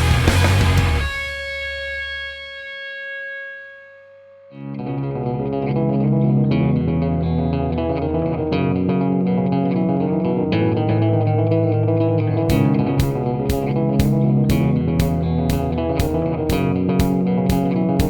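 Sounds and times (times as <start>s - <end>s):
rock music with distorted guitar: 0.0s - 3.6s, 4.6s - 18.0s.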